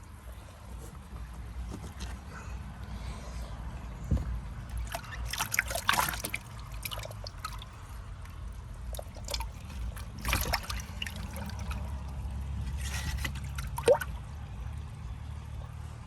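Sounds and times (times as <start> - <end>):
water splashing and dripping: 4.7 - 14.3.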